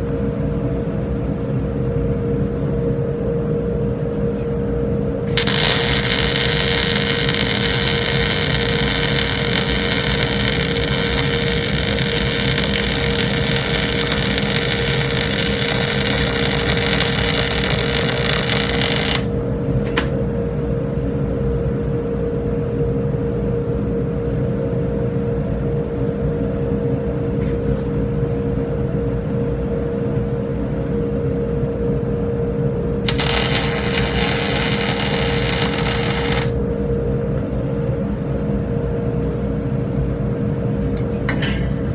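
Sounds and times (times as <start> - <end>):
constant machine hum: 0.0 - 41.9
arc welding crackling hiss: 5.3 - 19.3, 33.1 - 36.6.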